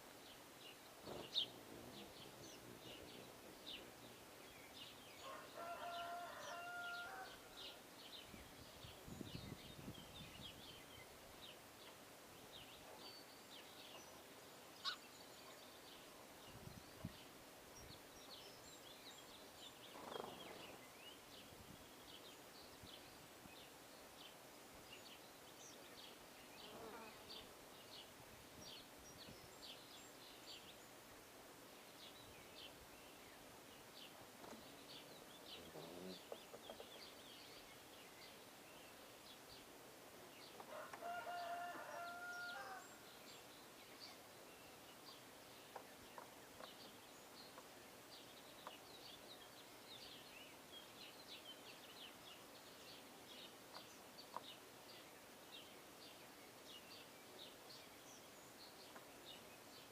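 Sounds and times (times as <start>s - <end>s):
small birds chirping: 0.0s - 59.9s
rooster crowing: 5.2s - 7.5s, 40.7s - 43.0s
lower falling bird calls: 9.3s - 24.4s.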